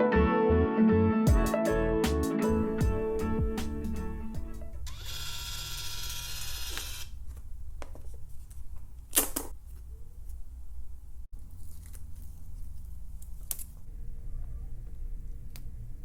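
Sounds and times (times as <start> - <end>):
label maker motor whirring: 4.9 - 7.1.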